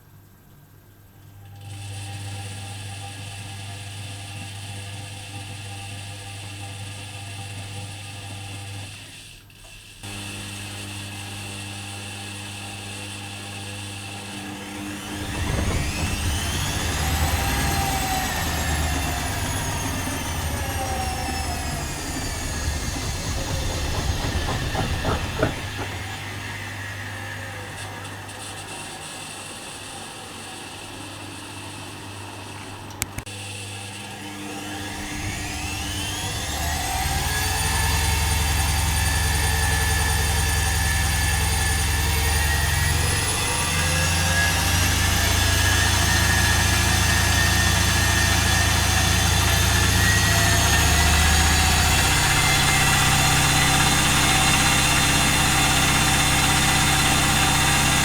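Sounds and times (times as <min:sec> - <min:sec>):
drain pump humming: 0:10.1 - 0:58.0
washing machine drum spinning: 0:14.0 - 0:28.8, 0:34.8 - 0:58.0.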